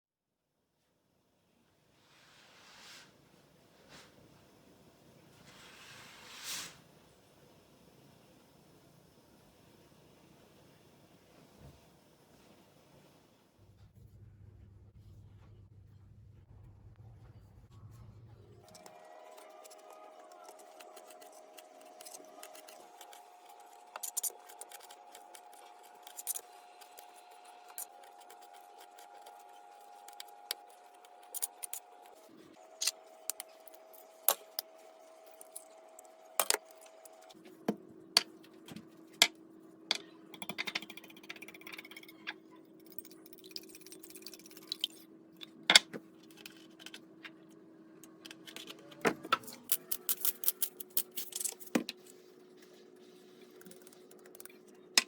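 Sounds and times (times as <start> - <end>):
kitchen utensils and dishes clinking: 48.3 - 52.0.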